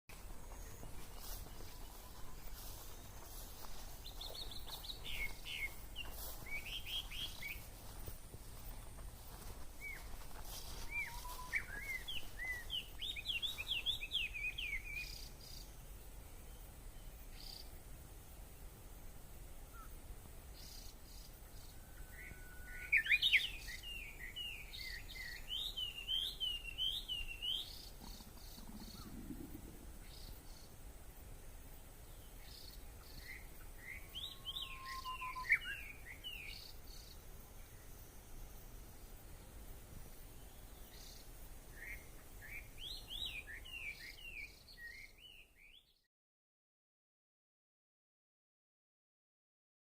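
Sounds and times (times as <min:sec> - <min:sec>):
bush warbler singing: 0:00.1 - 0:17.8, 0:19.7 - 0:46.1
bird singing sweeping notes: 0:09.8 - 0:15.6, 0:32.4 - 0:38.0.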